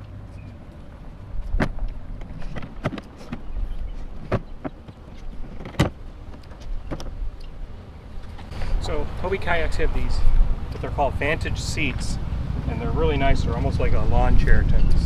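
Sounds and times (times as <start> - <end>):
steady low rumble: 8.5 - 15.0.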